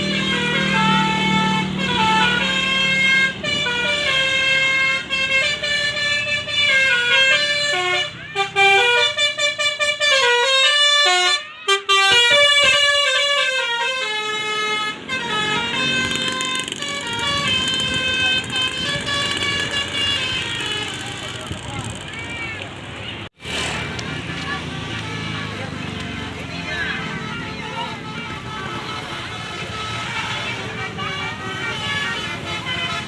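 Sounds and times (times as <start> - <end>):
musical air horn melody: 0.0 - 21.5.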